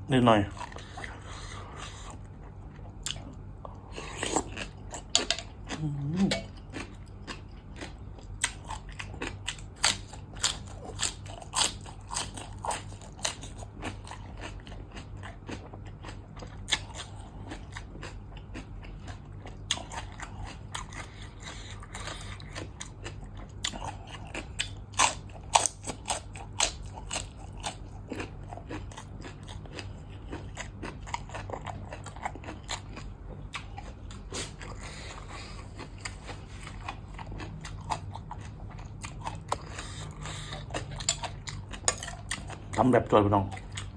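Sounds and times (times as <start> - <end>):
faint low hum: 0.0 - 43.9
chewing: 0.5 - 43.9
person crunching food: 0.5 - 43.9.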